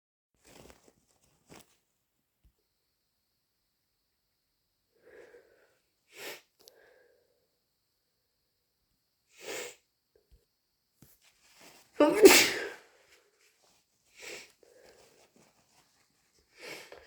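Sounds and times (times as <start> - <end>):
soft breaths: 5.0 - 7.6, 11.6 - 17.0
person sniffing congested nose: 6.1 - 6.5, 9.4 - 9.8, 12.0 - 12.8.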